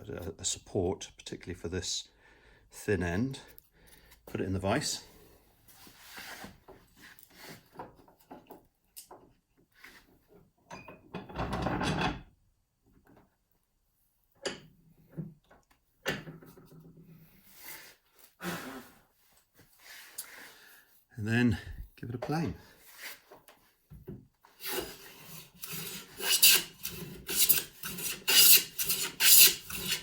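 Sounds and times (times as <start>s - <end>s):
bench vise scraping: 24.6s - 30.0s.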